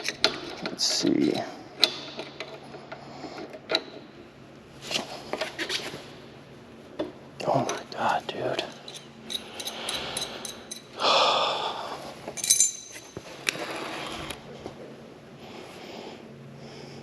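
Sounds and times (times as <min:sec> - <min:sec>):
soft breaths: 0:09.4 - 0:12.4, 0:14.5 - 0:17.0
person exhaling heavily: 0:09.8 - 0:12.1
metallic clink of a tool: 0:12.4 - 0:13.2.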